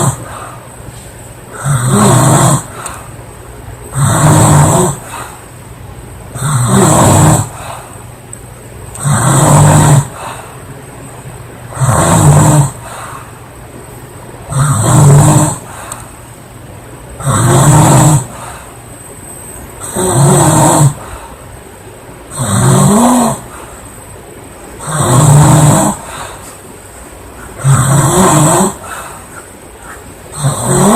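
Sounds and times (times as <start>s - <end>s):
girl snoring loudly: 0.0s - 0.5s, 1.5s - 3.0s, 3.9s - 5.3s, 6.4s - 7.8s, 9.0s - 10.4s, 11.7s - 13.0s, 14.5s - 15.9s, 17.2s - 18.5s, 19.8s - 21.1s, 22.3s - 23.6s, 24.8s - 26.2s, 27.6s - 29.0s, 30.3s - 30.9s.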